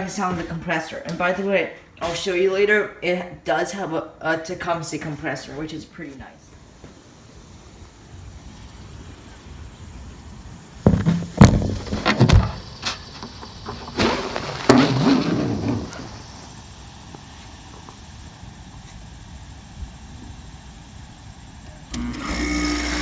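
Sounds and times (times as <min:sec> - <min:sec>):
plastic knocks and clattering: 0:10.8 - 0:15.9.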